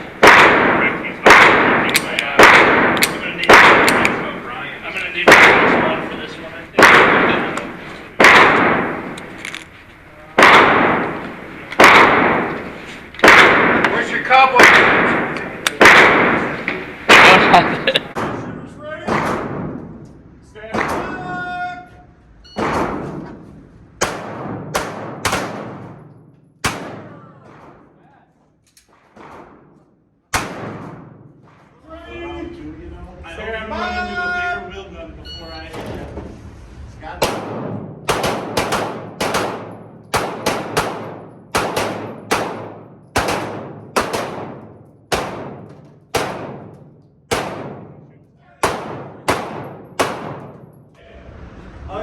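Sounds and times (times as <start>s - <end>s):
pistol shots echoing indoors: 0.0s - 9.4s, 10.4s - 20.1s, 22.6s - 28.0s, 28.7s - 31.7s, 37.2s - 51.0s.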